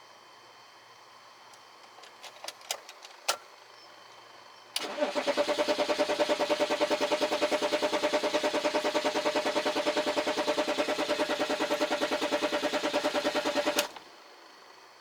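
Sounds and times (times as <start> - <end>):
diesel engine cranking: 4.8 - 14.0
starter motor whine: 4.8 - 14.2.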